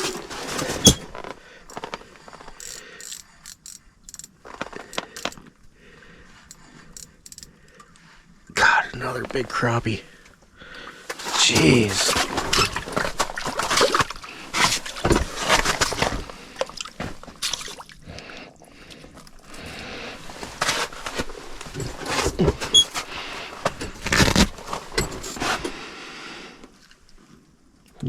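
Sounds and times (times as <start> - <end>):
scrapes and knocks on ice: 11.1 - 16.4
water sloshing: 11.1 - 18.0.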